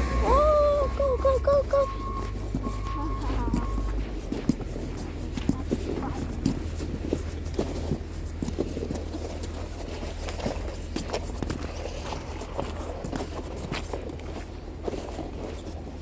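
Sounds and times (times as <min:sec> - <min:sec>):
steady low rumble: 0:00.0 - 0:15.9
footsteps crunching through snow: 0:00.0 - 0:16.0.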